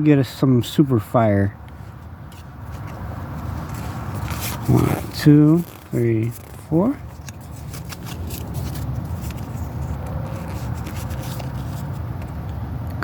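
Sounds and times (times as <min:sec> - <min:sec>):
cards rustling and scraping: 0:01.6 - 0:12.6
wrapper crinkling clicks: 0:04.2 - 0:11.9.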